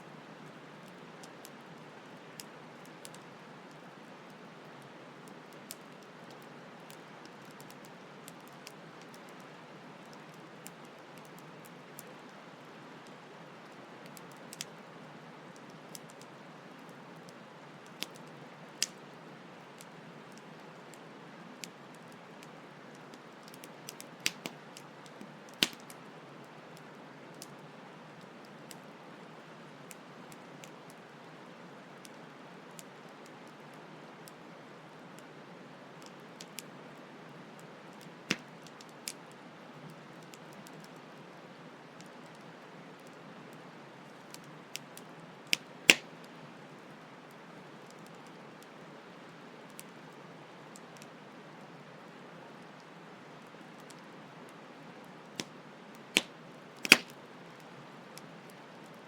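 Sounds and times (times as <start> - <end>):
campfire crackling and popping: 0.3 - 14.9, 15.5 - 28.9, 36.0 - 36.8, 37.5 - 41.0, 44.0 - 46.4, 55.3 - 59.0.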